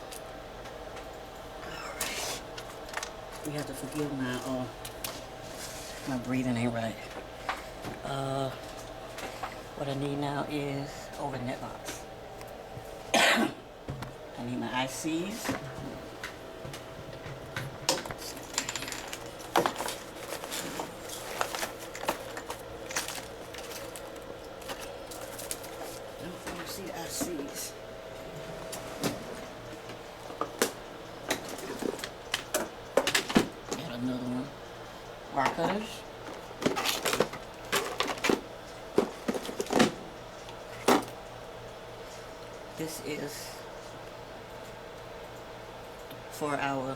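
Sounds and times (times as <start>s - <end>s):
small hard parts clattering: 17.9s - 25.8s, 35.4s - 40.0s.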